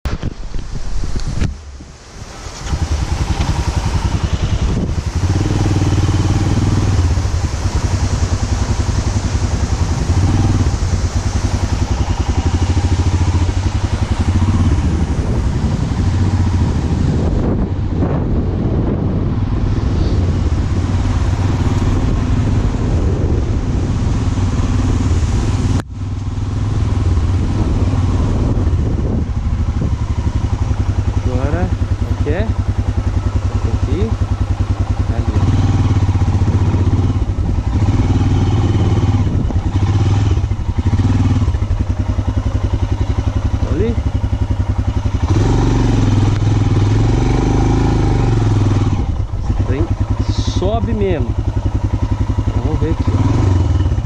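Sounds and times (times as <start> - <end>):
motorcycle engine pulling under load: 2.2 - 7.0.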